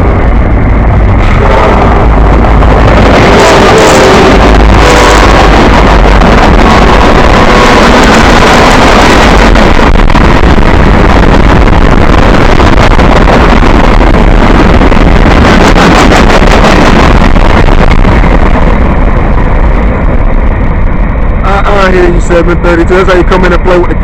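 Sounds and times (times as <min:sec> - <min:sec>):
freight locomotive passing: 0:00.0 - 0:24.0
wind buffeting microphone: 0:00.0 - 0:24.0
locomotive air horn: 0:01.1 - 0:09.0.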